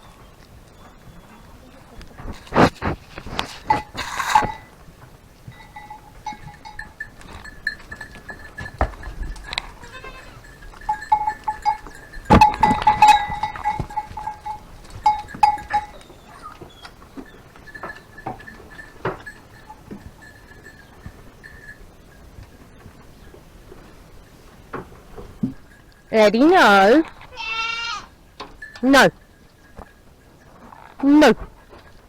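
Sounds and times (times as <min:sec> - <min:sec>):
goats bleating: 0:09.6 - 0:10.6, 0:27.2 - 0:28.2.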